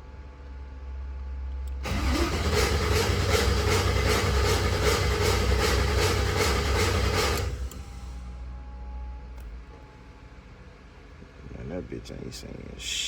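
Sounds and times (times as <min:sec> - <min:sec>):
engine cranking without starting: 0:01.8 - 0:08.2.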